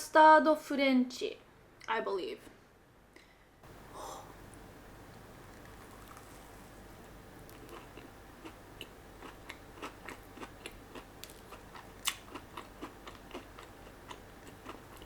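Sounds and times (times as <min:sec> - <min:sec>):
crunchy pastry being chewed: 0:05.5 - 0:15.0.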